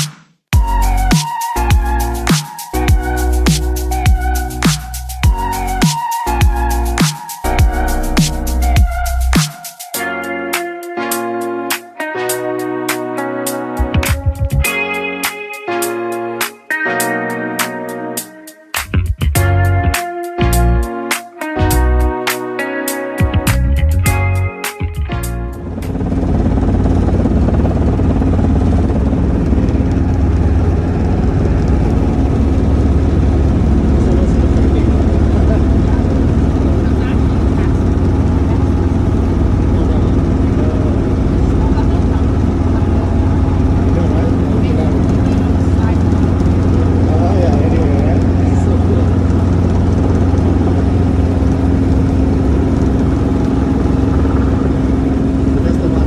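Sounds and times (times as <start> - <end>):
vehicle engine humming: 25.2 - 56.0.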